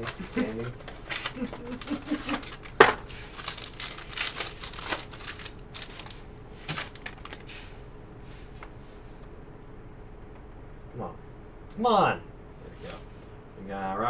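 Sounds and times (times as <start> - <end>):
packaging crinkling and rustling: 0.0 - 7.8.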